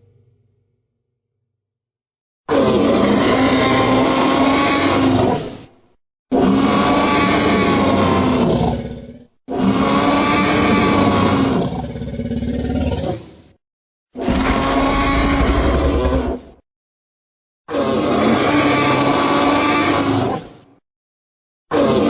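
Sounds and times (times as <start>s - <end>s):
dinosaur roars: 2.5s - 5.6s, 6.3s - 13.5s, 14.2s - 16.6s, 17.7s - 20.6s, 21.7s - 22.0s.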